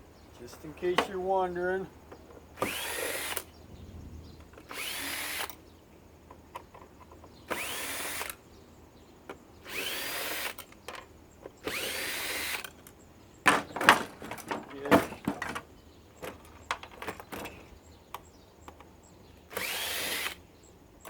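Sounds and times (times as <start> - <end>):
cordless drill motor whining: 2.6 - 3.6, 4.6 - 5.6, 7.4 - 8.4, 9.6 - 10.8, 11.5 - 12.8, 19.5 - 20.4.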